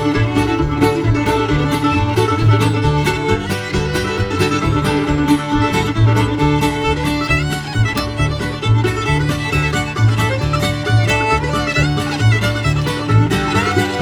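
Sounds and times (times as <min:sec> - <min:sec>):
fiddle melody: 0:00.0 - 0:14.0
mandolin: 0:00.0 - 0:14.0
strummed guitar: 0:00.0 - 0:14.0
walking bass line: 0:00.0 - 0:14.0.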